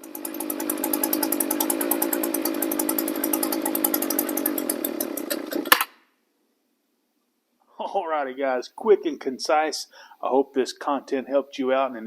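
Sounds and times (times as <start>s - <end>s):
small two-stroke engine running: 0.0s - 5.8s.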